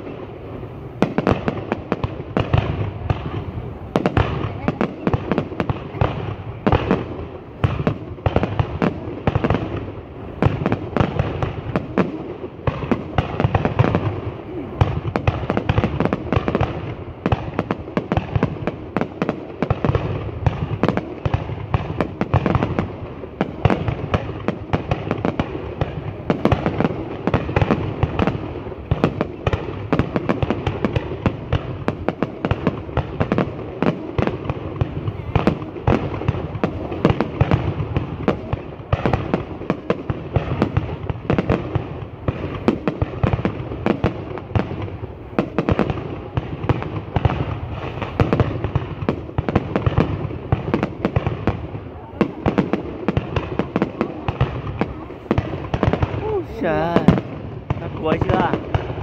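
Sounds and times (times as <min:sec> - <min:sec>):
fireworks bangs and crackles: 0:00.0 - 0:59.0.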